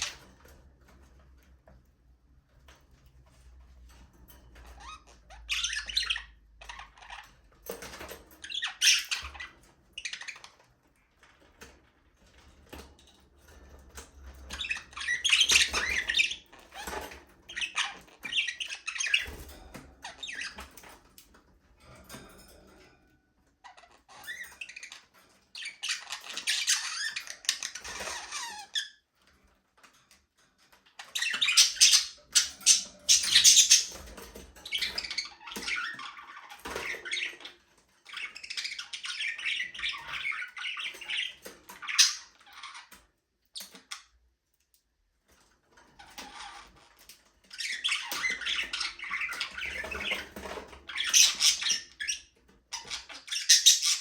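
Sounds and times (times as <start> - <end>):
budgerigars chattering and squawking: 4.7 - 7.2, 8.4 - 10.6, 14.4 - 20.7, 23.7 - 28.9, 31.0 - 42.9, 47.5 - 54.0.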